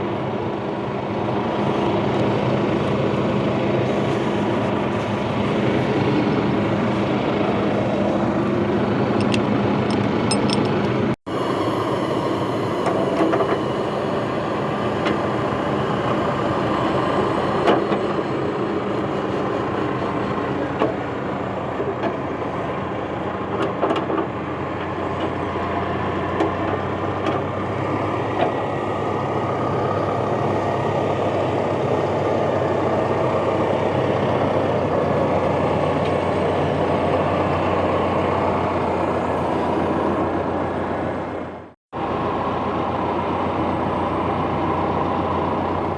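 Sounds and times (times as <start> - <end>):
tractor engine running under load: 0.0 - 45.9
knocks and clanks from attachment: 9.2 - 11.0.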